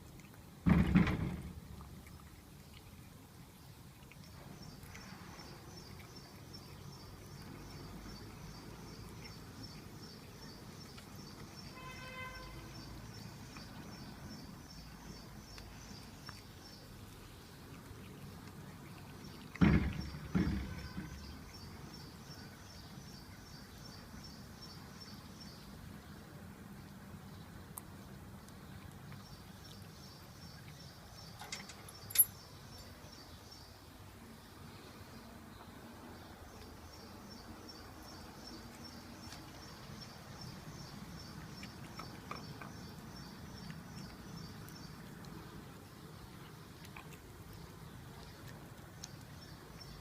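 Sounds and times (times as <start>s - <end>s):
loud thumps: 0.6s - 1.6s, 19.6s - 21.3s.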